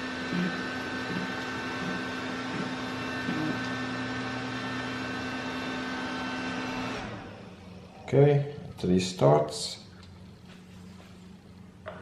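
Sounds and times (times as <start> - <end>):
computer fans whirring: 0.0 - 12.0
computer hum: 0.0 - 12.0.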